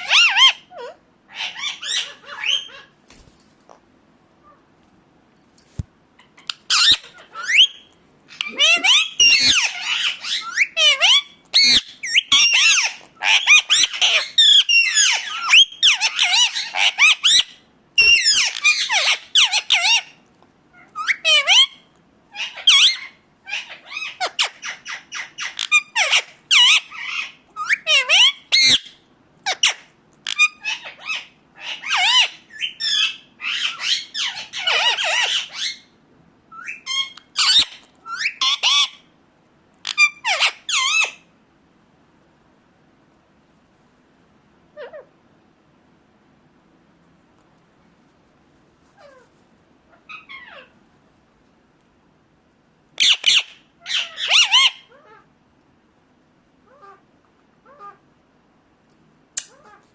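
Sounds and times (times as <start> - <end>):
parakeet chirps and squawks: 0.0 - 3.0, 6.2 - 39.1, 39.8 - 41.3, 44.8 - 45.1, 48.9 - 50.8, 53.0 - 55.3, 56.6 - 58.1.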